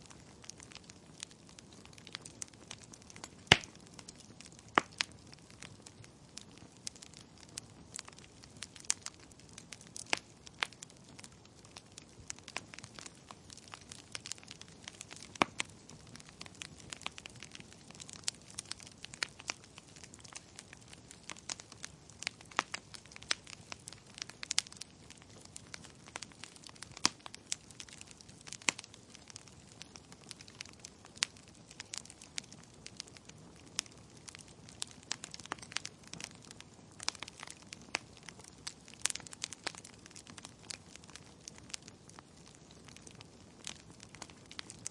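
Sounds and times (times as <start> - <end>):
logs crackling and popping: 0.0 - 44.9.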